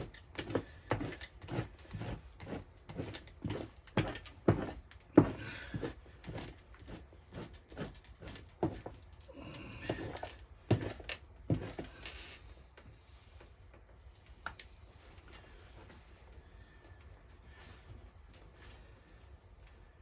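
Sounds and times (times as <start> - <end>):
knife scraping pelt: 0.0 - 4.8.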